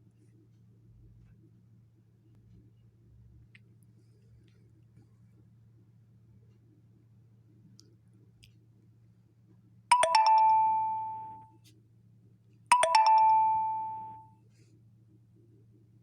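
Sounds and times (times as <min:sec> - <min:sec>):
electronic two-note chime: 0:09.9 - 0:11.5, 0:12.7 - 0:14.2.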